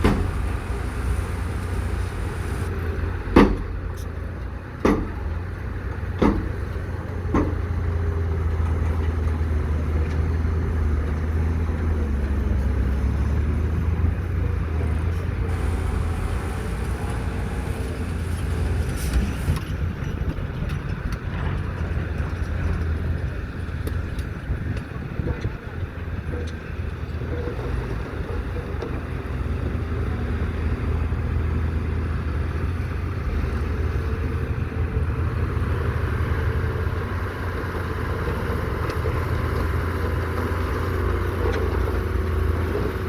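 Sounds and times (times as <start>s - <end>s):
machinery low rumble: 0.0s - 43.0s.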